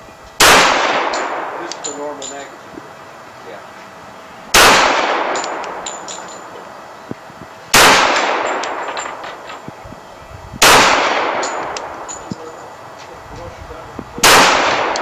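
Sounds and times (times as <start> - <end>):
pistol shots: 0.4 - 2.0, 4.5 - 6.4, 7.7 - 9.6, 10.6 - 12.0, 14.2 - 15.0.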